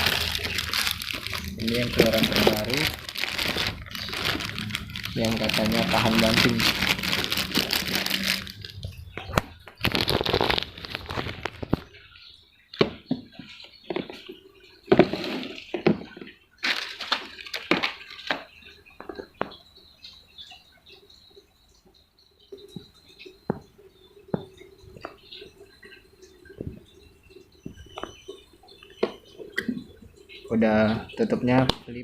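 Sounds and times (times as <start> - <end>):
packaging rustling: 0.0 - 12.0, 14.9 - 18.5.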